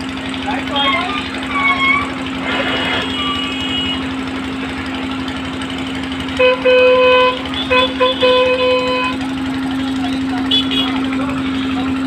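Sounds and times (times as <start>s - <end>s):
vehicle horn honking: 2.8s - 4.2s, 6.3s - 9.3s, 10.4s - 11.8s.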